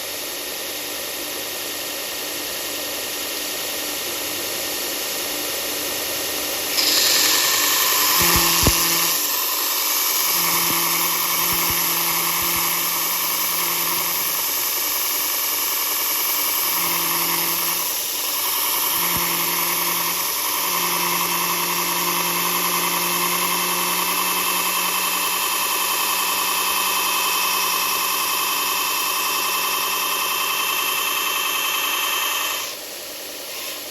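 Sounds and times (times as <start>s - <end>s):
power sander whirring: 6.7s - 32.8s.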